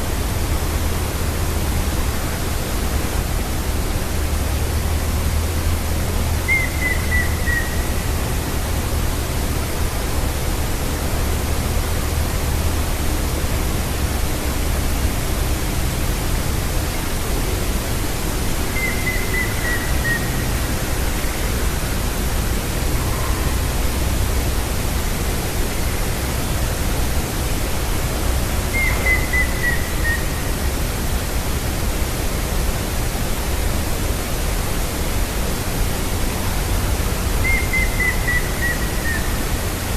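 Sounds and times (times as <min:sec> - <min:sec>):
steady hiss and low rumble: 0:00.0 - 0:39.9
woodpecker calling: 0:06.4 - 0:08.1, 0:18.8 - 0:20.8, 0:28.7 - 0:30.5, 0:37.3 - 0:39.6.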